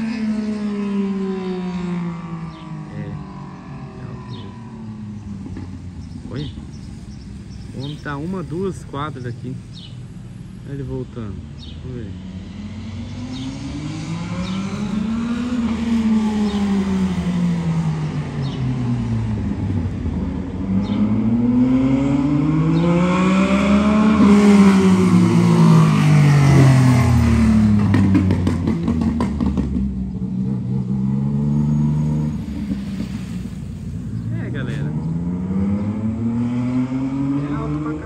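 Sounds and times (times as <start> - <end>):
loud motorcycle engine revving: 0.0 - 9.8, 11.6 - 38.0
exhaust crackling pops: 27.8 - 30.2.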